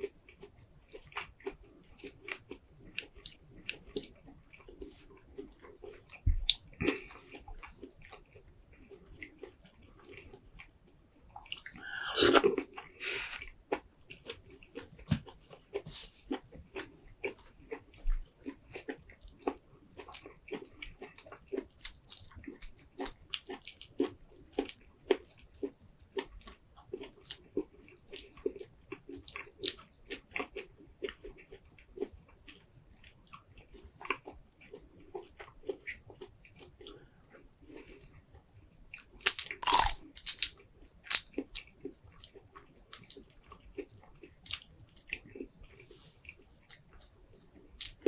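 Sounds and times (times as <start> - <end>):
chewing and biting: 0.3 - 48.0
wet mouth smacks and clicks: 39.0 - 40.5, 46.6 - 48.0.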